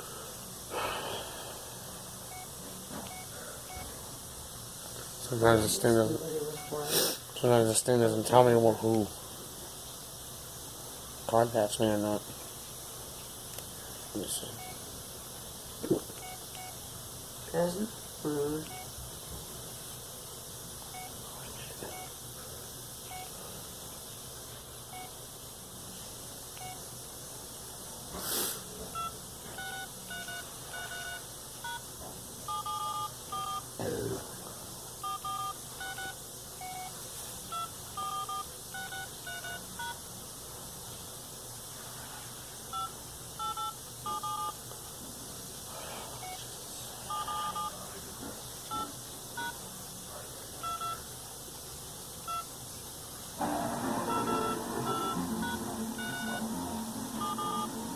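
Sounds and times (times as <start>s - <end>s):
low hiss: 0.0s - 57.9s
phone keypad touch tones: 3.1s - 3.9s, 18.7s - 18.9s, 26.6s - 26.8s, 29.0s - 31.8s, 32.5s - 33.6s, 35.0s - 36.9s, 37.5s - 40.0s, 42.7s - 44.6s, 47.1s - 47.7s, 50.6s - 51.0s, 54.0s - 56.5s, 57.2s - 57.9s.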